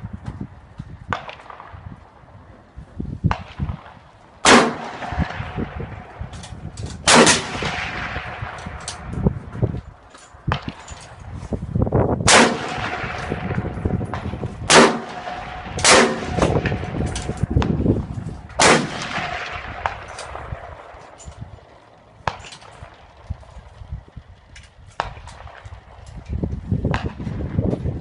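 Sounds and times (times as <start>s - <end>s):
gusty wind on microphone: 0.0s - 28.0s
loud bangs: 12.2s - 21.0s.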